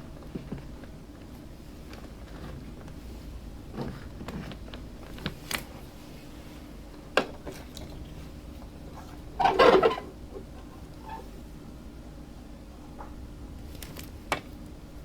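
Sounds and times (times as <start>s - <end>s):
clattering rustle: 9.0s - 11.3s.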